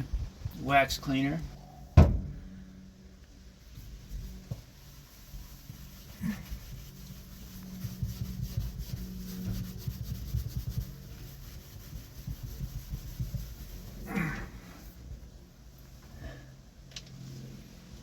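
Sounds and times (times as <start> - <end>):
cloth rubbing a surface: 3.6 - 15.0.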